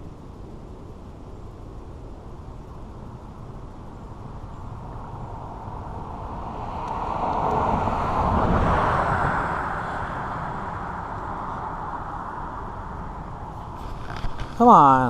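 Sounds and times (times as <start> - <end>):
traffic rumble: 0.0 - 15.0
vehicle passing by: 4.7 - 14.6.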